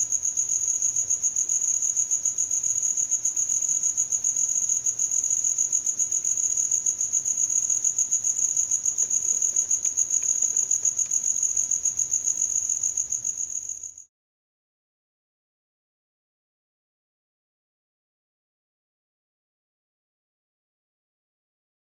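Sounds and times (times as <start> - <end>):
cricket chirping: 0.0 - 14.1.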